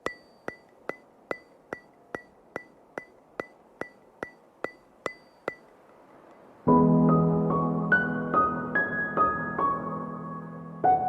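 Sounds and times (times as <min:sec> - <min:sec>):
metronome-like ticks: 0:00.0 - 0:06.5.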